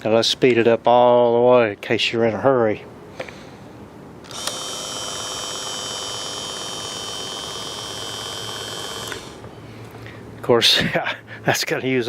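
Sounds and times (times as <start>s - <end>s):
caulking gun motor whine: 4.2s - 9.6s.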